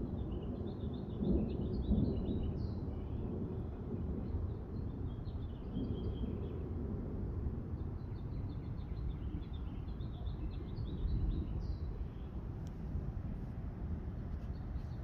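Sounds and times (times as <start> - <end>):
low rumble of storm: 0.0 - 15.0.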